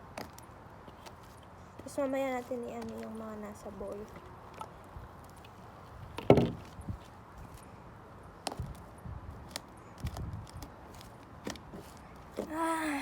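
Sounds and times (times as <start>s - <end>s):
loud thump: 6.2s - 6.6s.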